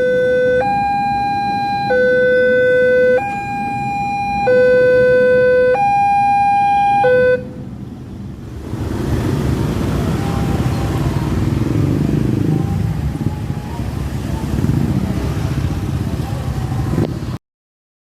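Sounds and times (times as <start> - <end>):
level-crossing two-tone siren: 0.0 - 7.6.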